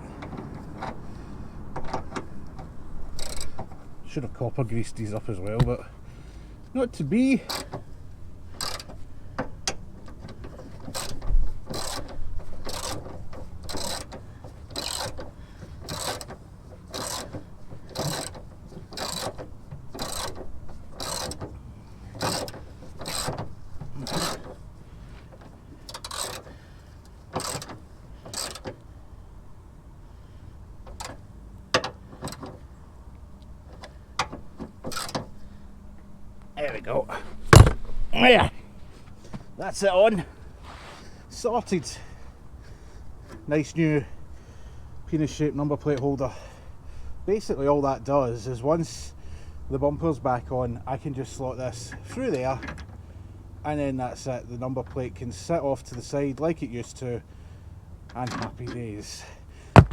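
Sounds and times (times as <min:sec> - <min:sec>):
socket ratchet clicking: 0:13.7 - 0:15.3.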